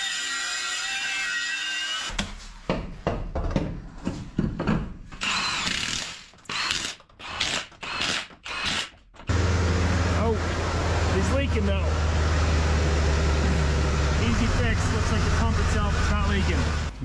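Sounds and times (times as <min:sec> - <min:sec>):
ratchet-like clicks and rasps: 0:05.2 - 0:09.0
steady low drone: 0:09.3 - 0:17.0.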